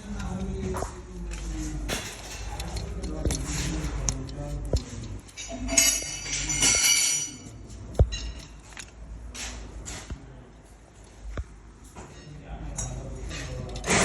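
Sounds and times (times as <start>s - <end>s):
metallic clinking and ringing: 5.2s - 8.9s.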